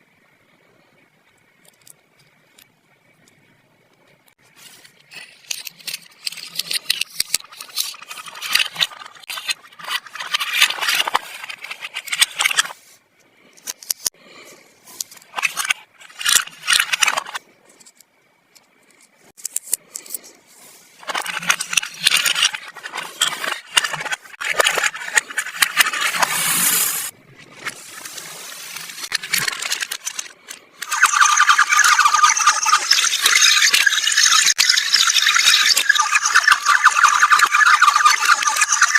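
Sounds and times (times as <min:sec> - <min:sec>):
plastic toy pieces clicking: 0:05.2 - 0:12.8, 0:15.0 - 0:18.0, 0:21.0 - 0:26.7, 0:28.7 - 0:38.9.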